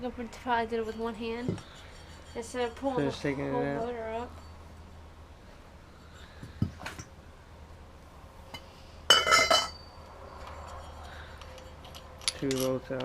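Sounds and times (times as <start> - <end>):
metal pieces clinking: 11.4 - 13.0.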